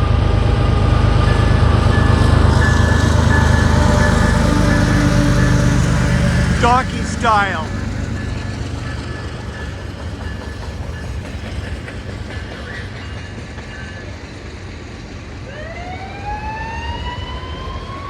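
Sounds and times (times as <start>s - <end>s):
freight train rumbling past: 0.0s - 18.0s
rising siren wail: 1.0s - 8.8s, 15.6s - 18.0s.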